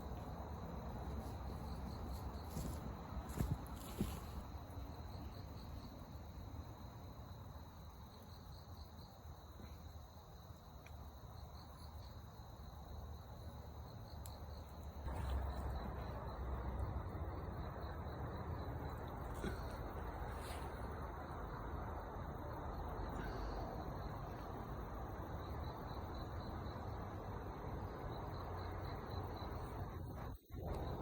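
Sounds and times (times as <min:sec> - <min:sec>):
insects trilling: 0:00.0 - 0:31.0
low background rumble: 0:12.3 - 0:25.9.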